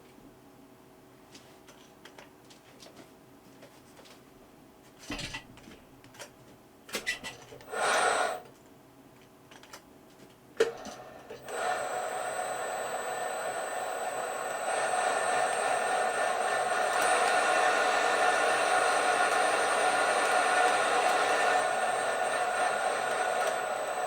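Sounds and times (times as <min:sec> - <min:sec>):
electric motor whirring: 0:11.4 - 0:24.0.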